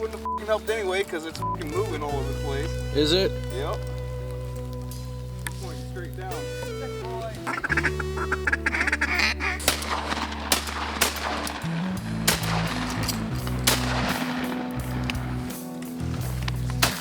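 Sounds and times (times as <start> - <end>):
background music with deep bass: 0.0 - 17.0
shotgun blasts: 9.1 - 16.0, 16.8 - 17.0.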